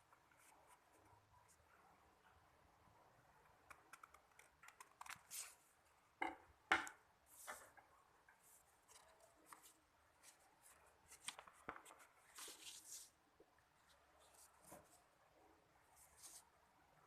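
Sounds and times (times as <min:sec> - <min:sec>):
paper rustling and crinkling: 0:08.8 - 0:13.2.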